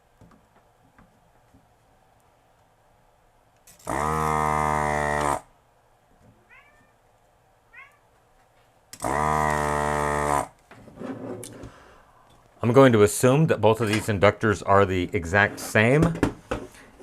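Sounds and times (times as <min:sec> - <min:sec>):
desoldering pump buzzing: 0:03.8 - 0:05.5, 0:09.0 - 0:10.6.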